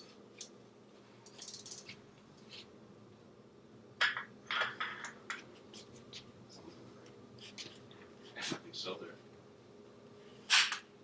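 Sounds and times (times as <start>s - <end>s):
faint steady hum: 0.0s - 11.0s
metal tools clinking and rattling: 1.2s - 2.0s.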